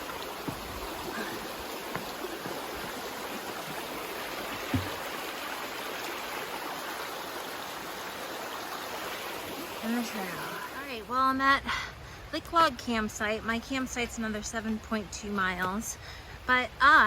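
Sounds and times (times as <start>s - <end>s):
creek running over rocks: 0.0s - 17.0s.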